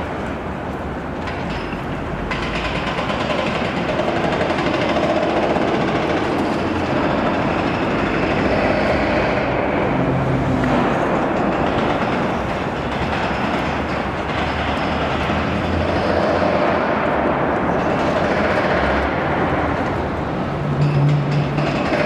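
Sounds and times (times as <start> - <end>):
excavator engine: 2.2 - 22.0
hydraulic breaker hammering: 20.8 - 22.0.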